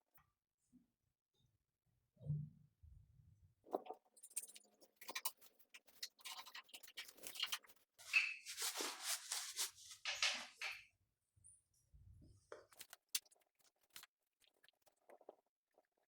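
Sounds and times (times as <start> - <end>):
rustling and scratching: 3.7 - 10.8, 12.4 - 15.9.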